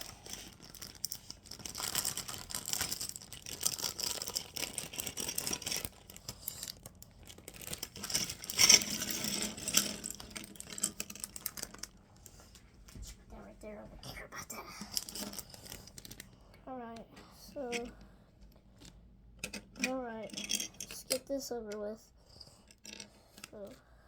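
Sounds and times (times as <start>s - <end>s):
plastic bag crinkling: 0.0s - 12.0s.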